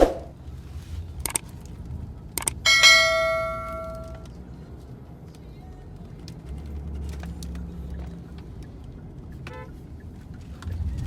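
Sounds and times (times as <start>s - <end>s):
sharp clicks: 1.2s - 1.5s, 2.4s - 2.8s
small bell ringing: 2.7s - 4.2s.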